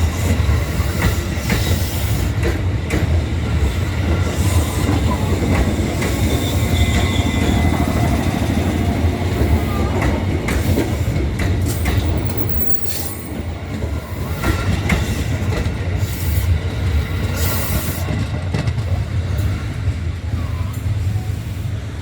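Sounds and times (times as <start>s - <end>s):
electric train rumbling: 0.0s - 22.0s
high wheel squeal: 11.9s - 14.2s.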